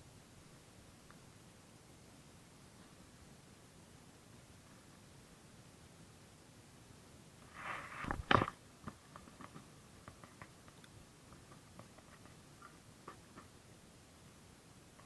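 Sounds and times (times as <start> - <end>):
brief rustle: 7.4 - 8.6.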